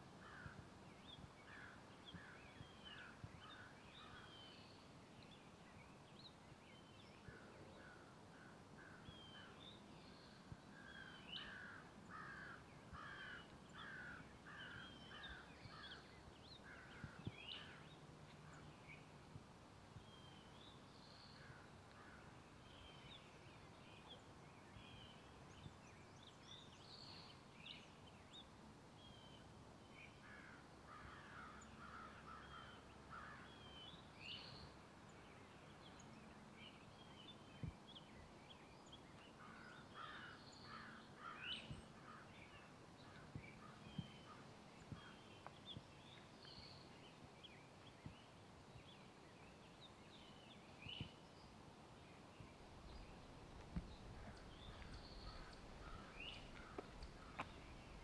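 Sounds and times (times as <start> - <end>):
small birds chirping: 31.4 - 58.0
faint ticks: 53.6 - 57.7.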